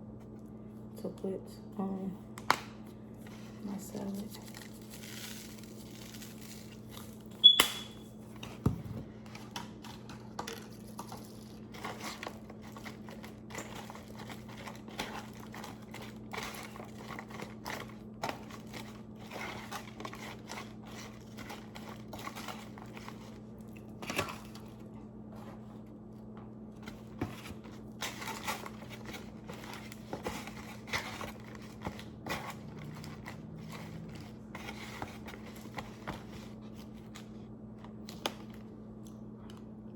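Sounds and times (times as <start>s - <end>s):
steady low hum: 0.0s - 39.9s
plastic packets crinkling and tearing: 3.3s - 7.5s, 9.4s - 24.9s, 26.8s - 37.3s.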